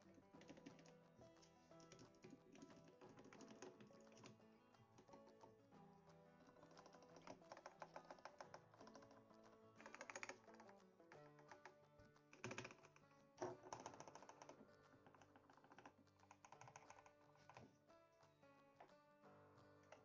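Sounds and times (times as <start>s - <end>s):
background music: 0.0s - 20.0s
typing on a mechanical keyboard: 12.3s - 17.7s.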